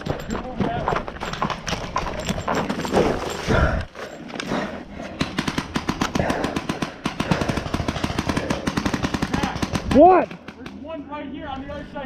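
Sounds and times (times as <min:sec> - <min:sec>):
paintball markers firing: 0:05.1 - 0:10.9.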